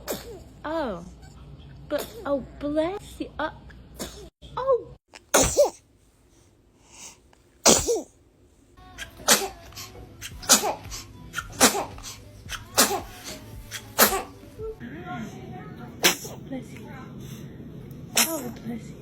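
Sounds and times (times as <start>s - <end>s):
baby sneezing: 0.0s - 0.5s, 4.0s - 4.3s, 5.3s - 5.8s, 7.6s - 8.1s, 9.0s - 14.4s, 16.0s - 16.4s, 18.2s - 18.6s.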